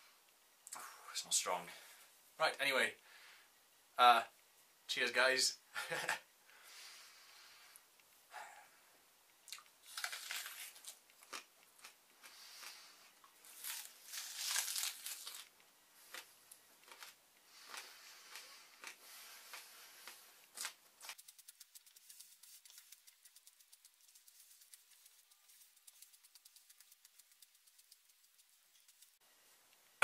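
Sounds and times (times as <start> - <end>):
person crunching raw onion: 9.5 - 29.2
faint fast ticking: 21.1 - 29.2.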